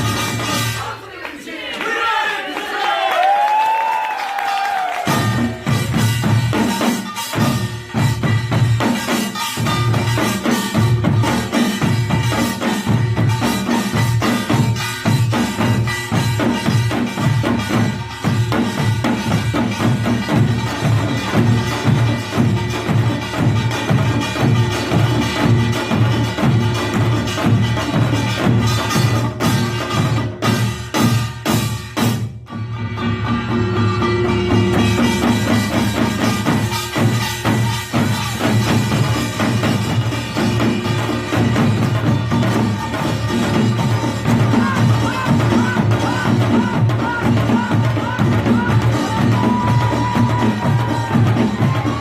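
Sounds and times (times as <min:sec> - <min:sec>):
drums beating fast: 0:00.0 - 0:52.0
metal gongs ringing: 0:32.9 - 0:38.0.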